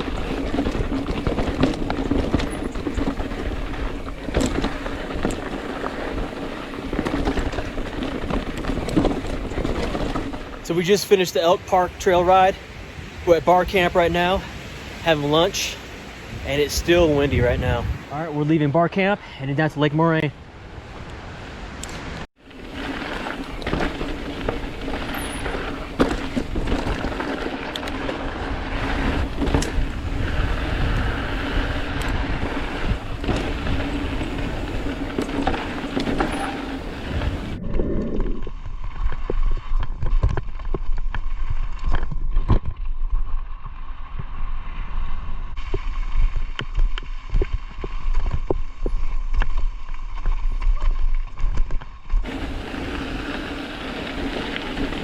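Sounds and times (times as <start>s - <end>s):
bike rattling and knocking over rocks: 0.0s - 11.1s, 22.5s - 37.6s, 45.6s - 55.0s
wind rushing over microphone: 0.0s - 18.5s, 20.3s - 50.6s
bike tyres crunching: 0.0s - 18.7s, 22.4s - 55.0s.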